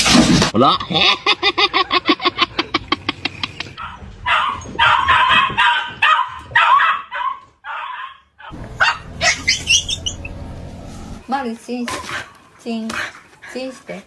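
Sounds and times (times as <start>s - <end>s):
dog barking: 3.8s - 10.2s.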